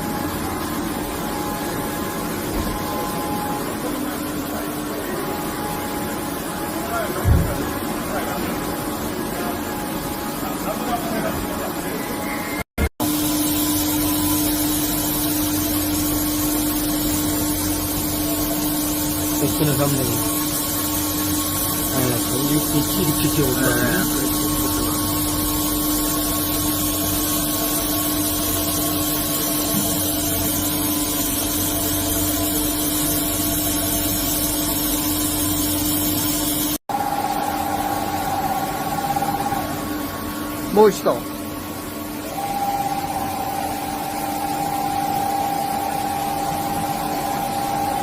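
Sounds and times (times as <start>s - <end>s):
milling machine hum: 0.0s - 48.0s.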